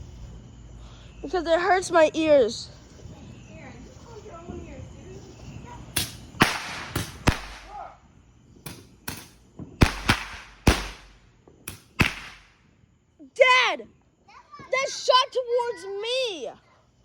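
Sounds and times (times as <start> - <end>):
fireworks bangs: 4.4 - 7.9, 8.6 - 12.6.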